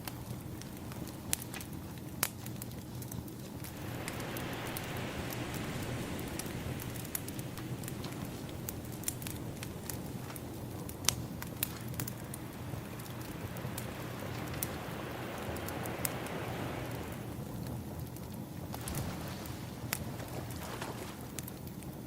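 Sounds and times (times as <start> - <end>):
wood fire crackling and popping: 0.0 - 22.0
ocean waves: 3.4 - 17.6, 18.8 - 21.3.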